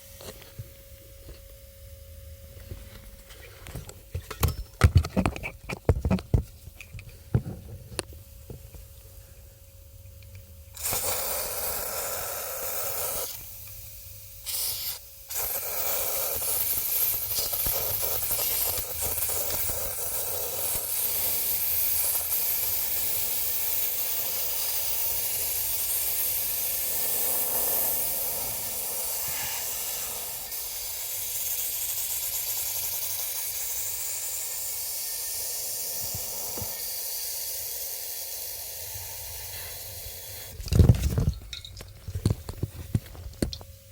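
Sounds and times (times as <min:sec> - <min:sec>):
pressurised spray hissing: 0:10.7 - 0:40.6.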